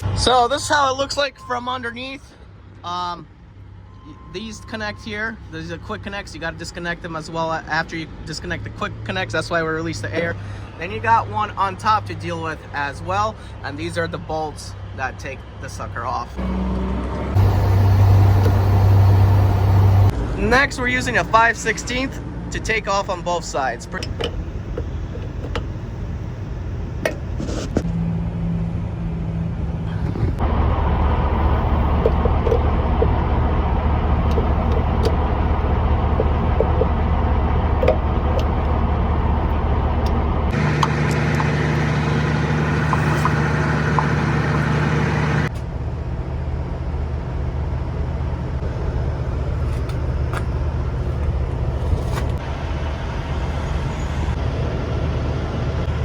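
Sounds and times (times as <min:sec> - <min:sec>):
diesel engine idling: 0:16.4 - 0:22.1, 0:29.9 - 0:56.0.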